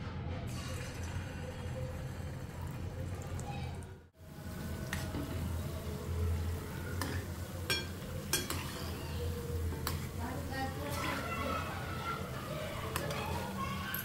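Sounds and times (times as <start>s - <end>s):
fritters sizzling in oil: 4.3s - 13.8s.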